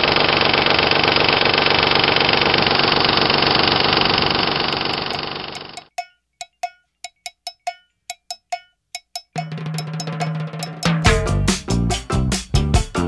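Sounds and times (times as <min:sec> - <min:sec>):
sharp ringing percussive hits: 0:04.7 - 0:12.2.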